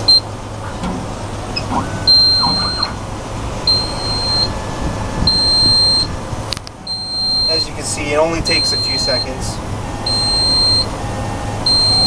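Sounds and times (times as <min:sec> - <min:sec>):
high electronic beep: 0:01.6 - 0:03.1, 0:03.7 - 0:04.6, 0:05.3 - 0:06.1, 0:08.5 - 0:09.3.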